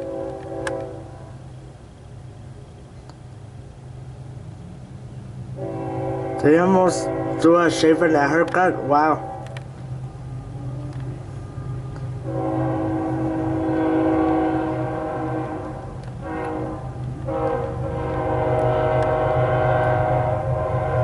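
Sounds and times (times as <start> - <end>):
locomotive air horn blasts: 0.0 - 1.5, 5.6 - 9.7, 10.3 - 21.0
train rumble: 0.0 - 21.0.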